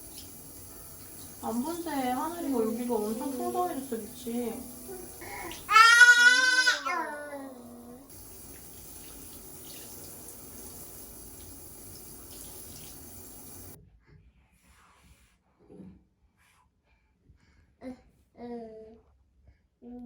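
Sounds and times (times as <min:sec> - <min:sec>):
water running: 0:00.0 - 0:13.8.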